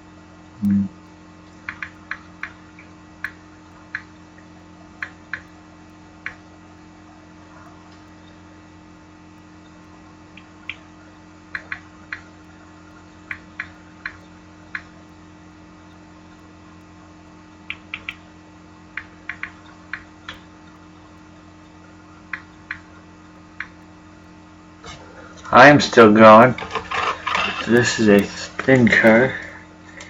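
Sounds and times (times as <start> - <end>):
low electrical hum: 0.0 - 30.0
keyboard and mouse clicks: 17.7 - 18.2.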